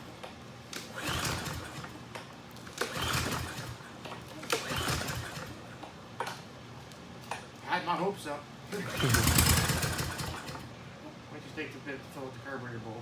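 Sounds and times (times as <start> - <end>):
lawn mower starter cord pulls: 0.8 - 1.9, 2.7 - 3.8, 4.4 - 5.5, 8.8 - 10.7
engine turning over without catching: 0.8 - 2.0, 2.7 - 5.6, 8.7 - 10.7.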